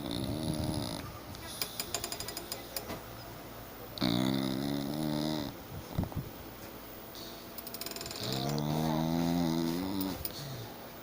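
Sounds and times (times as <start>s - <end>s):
person snoring: 4.0s - 5.6s, 8.0s - 10.7s.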